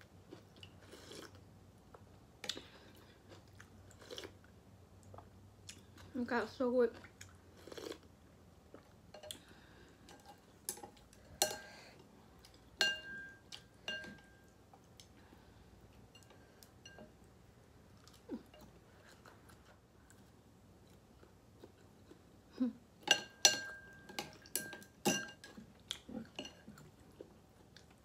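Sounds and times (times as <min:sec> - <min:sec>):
utensils clinking against bowl: 0:10.1 - 0:11.7, 0:12.8 - 0:14.5, 0:23.0 - 0:25.6, 0:26.3 - 0:26.8.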